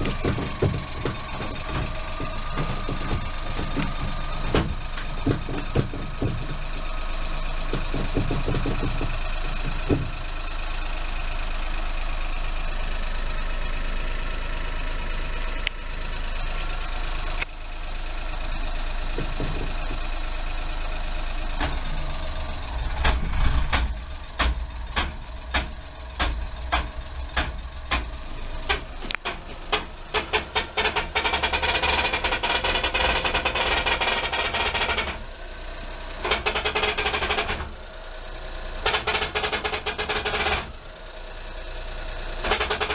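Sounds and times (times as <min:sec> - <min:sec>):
sharp clicks into rattle: 0:00.0 - 0:10.4, 0:22.7 - 0:35.2, 0:42.4 - 0:42.9
van engine running: 0:00.0 - 0:42.9.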